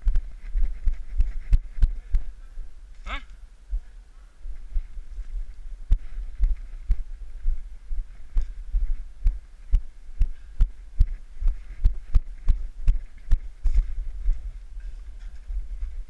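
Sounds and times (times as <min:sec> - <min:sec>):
footsteps walking briskly: 0:00.0 - 0:02.8, 0:03.7 - 0:16.0
steady low rumble: 0:00.0 - 0:16.0.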